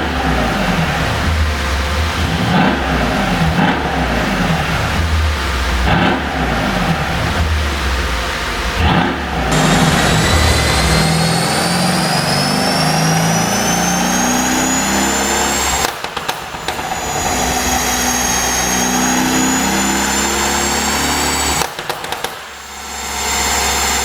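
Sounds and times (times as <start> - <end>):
car engine whining under load: 0.0 - 24.0
exhaust pops and crackles: 15.8 - 17.0, 21.6 - 22.5.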